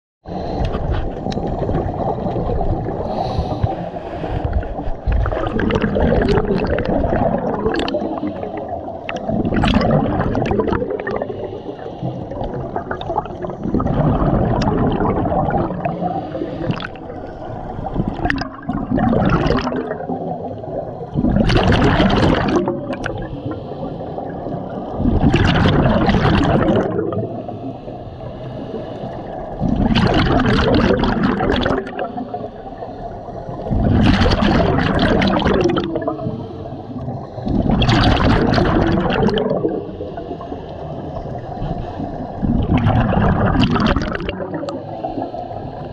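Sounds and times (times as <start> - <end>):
gurgling exhaled bubbles: 0.3 - 28.0, 28.7 - 45.9
diver breathing through regulator: 3.0 - 5.2, 7.8 - 9.4, 11.1 - 12.8, 15.7 - 17.9, 23.1 - 24.4, 27.2 - 29.7, 36.1 - 37.8, 39.7 - 42.6, 44.5 - 45.9.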